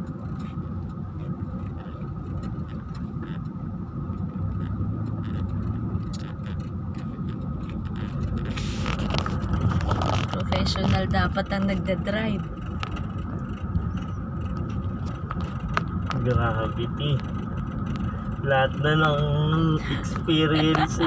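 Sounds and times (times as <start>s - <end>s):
engine and tyres rumbling: 0.0s - 21.0s
vehicle body knocks and creaks: 0.0s - 21.0s.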